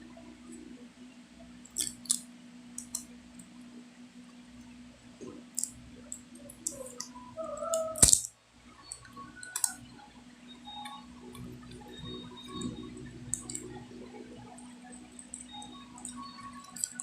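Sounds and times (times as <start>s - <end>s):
steady low hum: 0.0s - 17.0s
sharp loud click: 8.0s - 8.3s.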